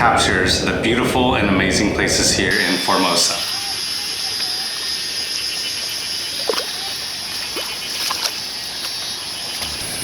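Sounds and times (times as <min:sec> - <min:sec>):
high-pitched insect chirring: 0:02.6 - 0:10.0
rain hiss: 0:02.6 - 0:10.0.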